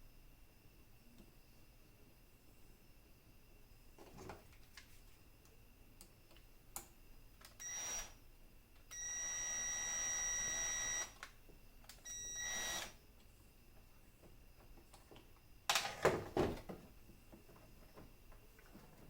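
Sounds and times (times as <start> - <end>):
power tool motor whining: 12.3 - 13.0.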